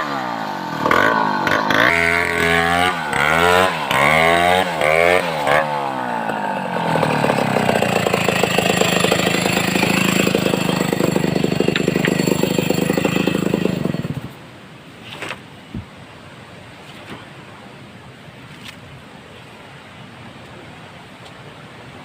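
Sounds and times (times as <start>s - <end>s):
chainsaw engine revving and idling: 0.0s - 14.4s.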